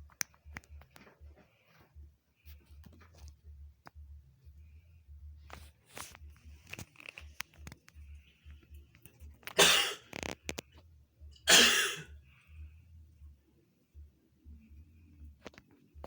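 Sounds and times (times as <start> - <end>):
person coughing: 9.6 - 10.0, 11.5 - 12.1.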